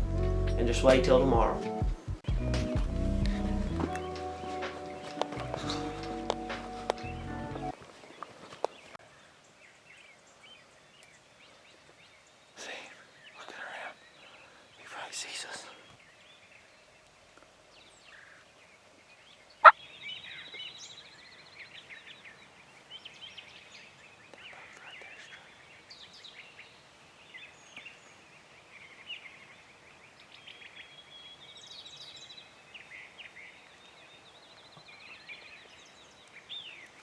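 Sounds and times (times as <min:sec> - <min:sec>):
rapid rattling bird calls: 0:07.9 - 0:30.7.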